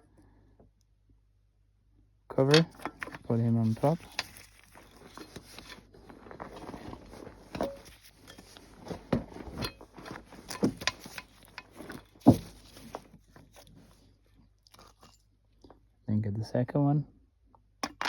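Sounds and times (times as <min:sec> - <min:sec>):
parts clicking and knocking: 0:02.4 - 0:05.8, 0:06.5 - 0:13.1.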